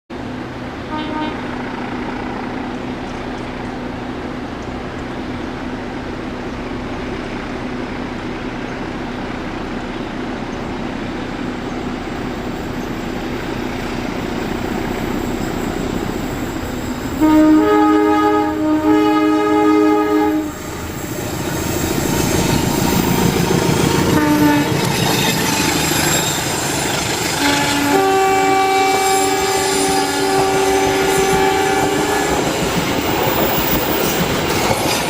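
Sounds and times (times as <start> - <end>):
train rumbling: 0.1 - 35.0
multi-tone locomotive horn: 0.8 - 2.5, 17.1 - 21.0, 22.5 - 26.4, 27.2 - 32.8
faint short train toot: 0.9 - 1.6, 15.2 - 23.1, 23.8 - 32.5.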